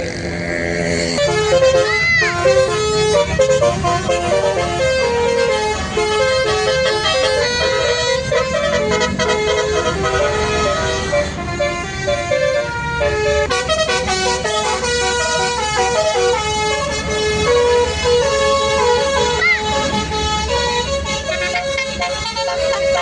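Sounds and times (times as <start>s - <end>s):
multi-tone bus horn melody: 0.0s - 23.0s
vehicle engine running: 0.0s - 23.0s.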